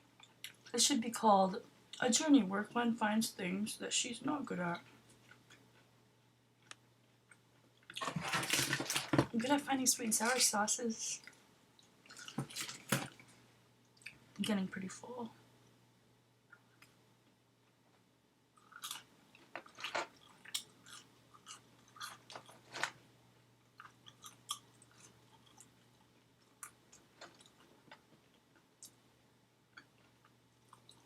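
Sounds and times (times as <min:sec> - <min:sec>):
person chewing food: 0:05.0 - 0:05.9, 0:11.2 - 0:13.3, 0:18.6 - 0:22.7, 0:23.7 - 0:29.0, 0:29.7 - 0:31.0.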